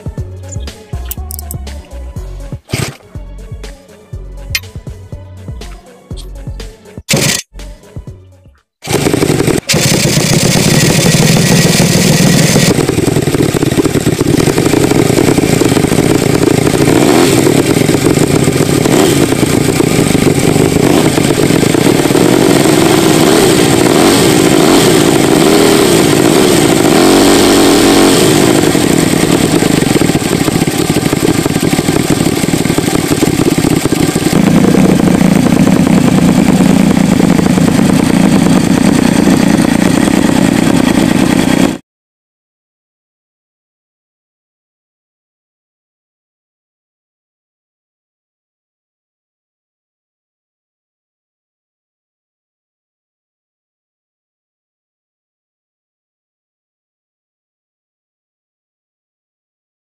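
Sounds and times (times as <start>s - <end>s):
engine running loud: 7.1s - 7.8s, 8.8s - 41.8s.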